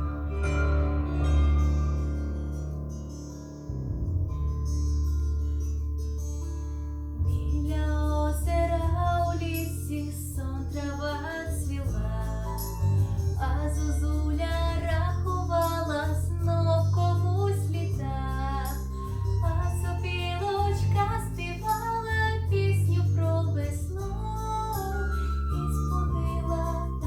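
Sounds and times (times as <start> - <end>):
backing track with bass line: 0.0 - 27.0
girl singing a pop song: 7.3 - 27.0.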